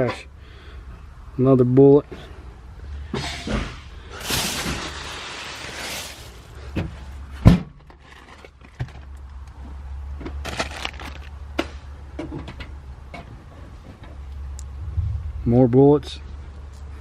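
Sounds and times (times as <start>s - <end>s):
rustling and clicks of items: 7.8s - 14.2s
low steady hum: 13.8s - 17.0s
sharp thump: 14.8s - 15.4s.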